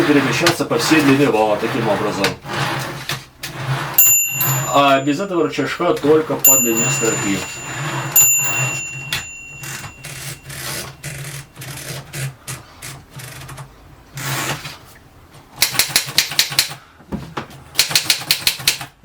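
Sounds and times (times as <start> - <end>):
typewriter clicking: 15.6 - 16.8, 17.8 - 19.0.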